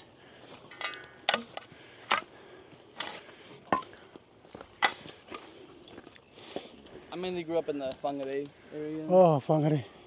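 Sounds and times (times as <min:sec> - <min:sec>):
hand tools digging stony dirt: 0:00.5 - 0:05.5.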